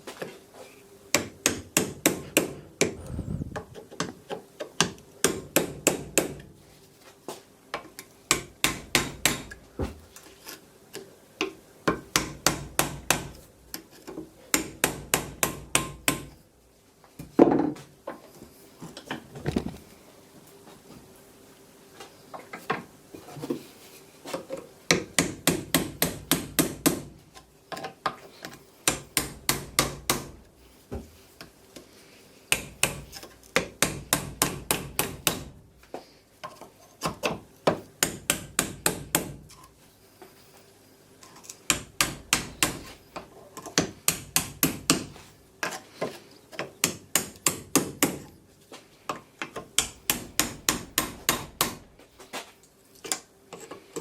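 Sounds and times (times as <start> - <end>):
hammer tapping: 8.3 - 9.6, 14.5 - 16.3, 28.8 - 30.3, 32.5 - 35.5, 37.0 - 39.4, 43.8 - 45.8, 49.4 - 51.8.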